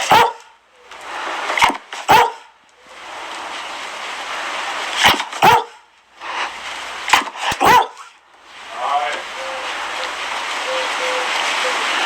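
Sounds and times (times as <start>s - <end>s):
dog barking: 0.0s - 0.5s, 2.1s - 2.5s, 5.4s - 5.8s, 7.6s - 8.1s
steady hiss: 0.7s - 12.0s.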